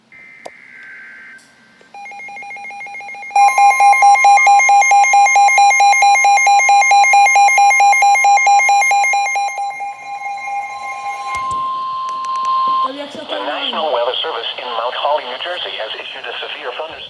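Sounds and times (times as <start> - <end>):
steady warning alarm tone: 0.0 - 16.4
rapid electronic alarm beeping: 2.0 - 15.2
digital data burst: 8.4 - 13.8.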